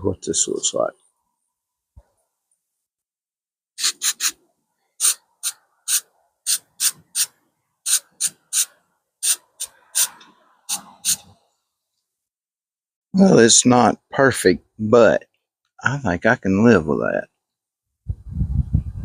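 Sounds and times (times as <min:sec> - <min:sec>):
sandpaper scraping plastic: 0:03.8 - 0:04.4, 0:05.0 - 0:11.3.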